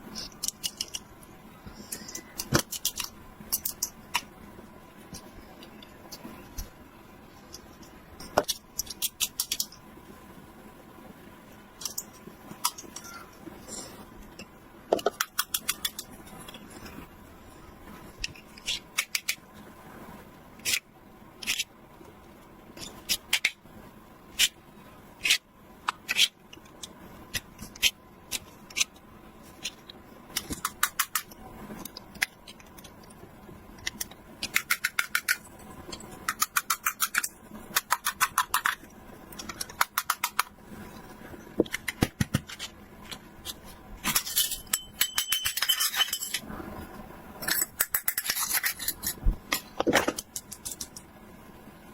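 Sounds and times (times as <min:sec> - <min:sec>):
sharp clicks and snips: 0:15.1 - 0:16.1, 0:25.2 - 0:33.2, 0:33.8 - 0:40.6.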